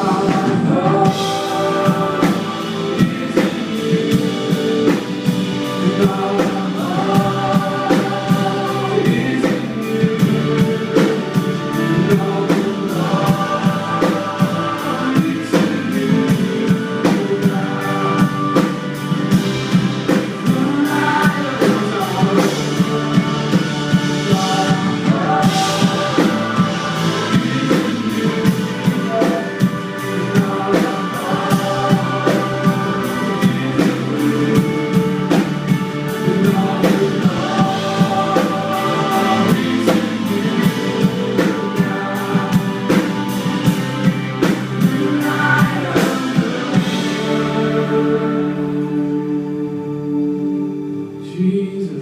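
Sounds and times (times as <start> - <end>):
drum kit: 0.0 - 49.2
sustained keyboard and guitar chords: 0.0 - 52.0
worship band playing: 0.0 - 52.0.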